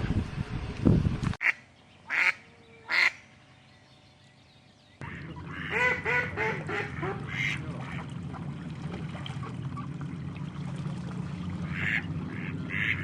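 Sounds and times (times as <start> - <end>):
ducks quacking: 1.4 - 3.3, 5.0 - 10.1, 11.6 - 13.0
low rumbling: 5.0 - 13.0.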